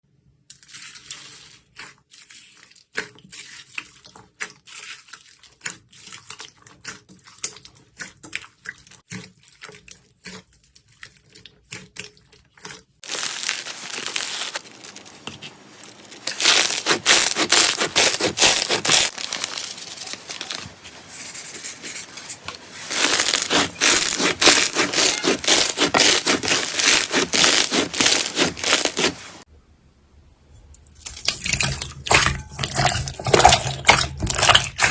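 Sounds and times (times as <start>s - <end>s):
slime squeezed by hand: 13.0s - 15.1s, 16.2s - 19.6s, 22.9s - 29.4s.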